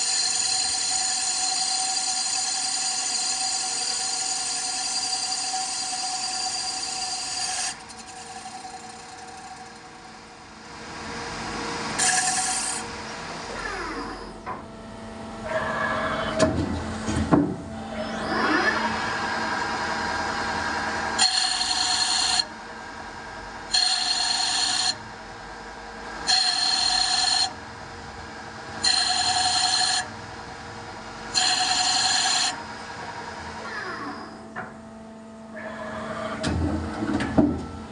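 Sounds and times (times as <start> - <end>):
machine whines: 0.0 - 37.9
steady machine hum: 0.0 - 37.9
machine knocks: 16.4 - 17.7, 36.4 - 37.7.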